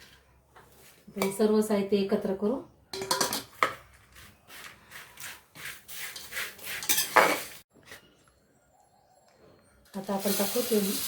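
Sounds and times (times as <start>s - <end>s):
spoon scraping metal pan: 3.0s - 7.6s.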